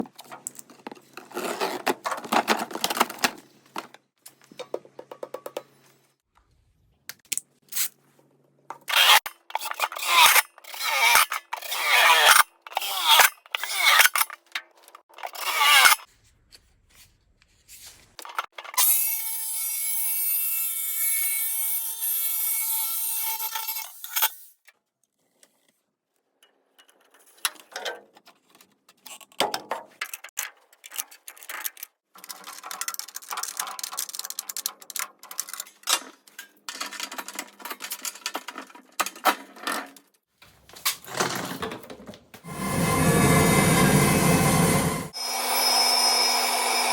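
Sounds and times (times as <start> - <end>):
power tool running: 42.5 - 46.9
sawing strokes: 42.5 - 46.9.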